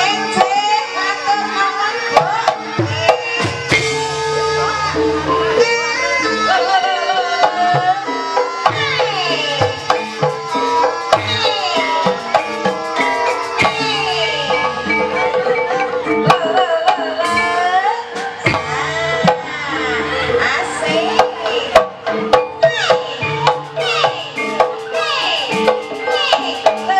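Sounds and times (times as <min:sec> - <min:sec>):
hand drums rhythm: 0:00.0 - 0:05.8, 0:06.4 - 0:26.9
metallophone tones: 0:00.0 - 0:26.9
sliding melody line: 0:08.8 - 0:21.4.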